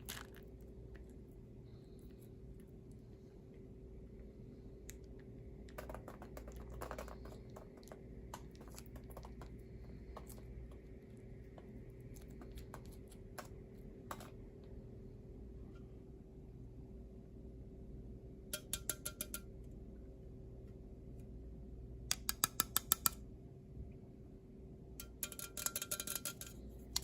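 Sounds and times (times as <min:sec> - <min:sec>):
steady low hum: 0:00.0 - 0:27.0
faint clicks and taps: 0:04.8 - 0:14.8.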